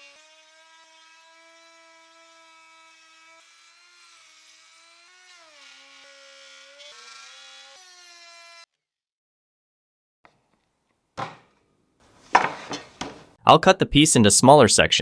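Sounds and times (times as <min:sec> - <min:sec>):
wood router whining: 0:00.0 - 0:08.6.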